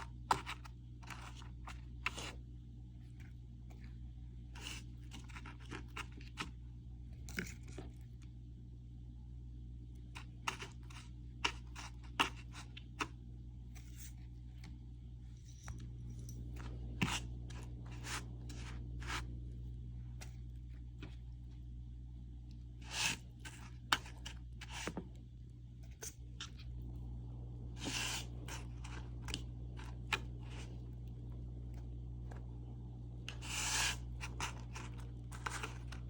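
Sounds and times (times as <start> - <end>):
steady low hum: 0.0 - 36.0
scraping and rustling: 10.2 - 21.6, 27.7 - 32.5, 33.3 - 36.0.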